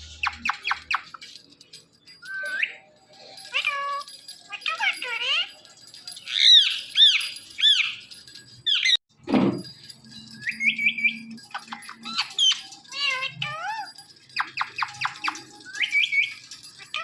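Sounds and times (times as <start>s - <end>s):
parakeet squawking: 3.5s - 5.5s.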